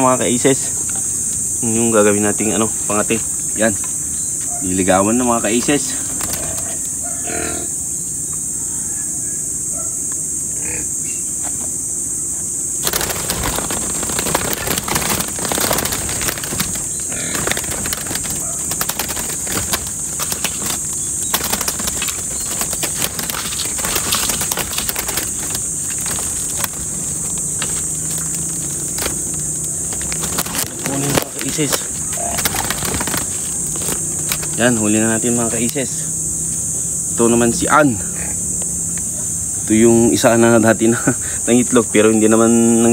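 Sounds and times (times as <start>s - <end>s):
dove wings flapping: 0.0s - 7.1s, 12.7s - 35.7s
crickets chirring: 0.0s - 42.9s
bird clattering against cage: 5.3s - 7.3s, 12.8s - 34.8s.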